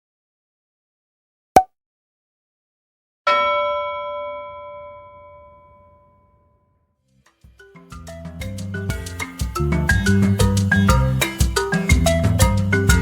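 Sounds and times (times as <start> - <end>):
bell-like ding: 3.3 - 6.8.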